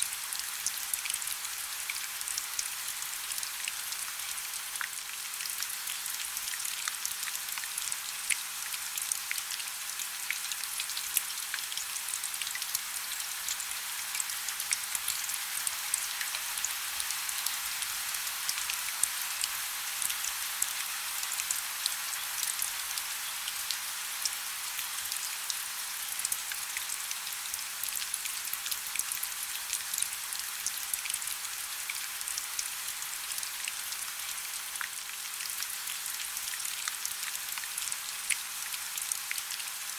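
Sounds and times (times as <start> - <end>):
rain on a hard surface: 0.0 - 39.9.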